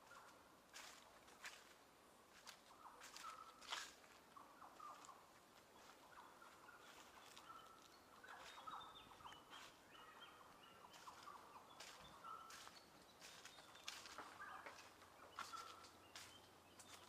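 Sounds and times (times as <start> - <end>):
faint whistled bird calls: 2.7 - 5.2, 5.8 - 17.0.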